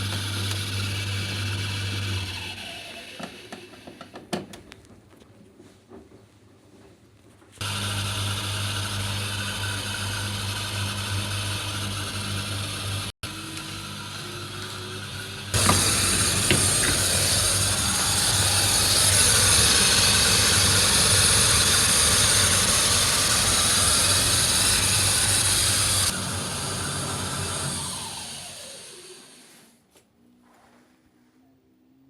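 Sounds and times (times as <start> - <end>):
dryer running with hissing squeal: 11.5 - 29.6.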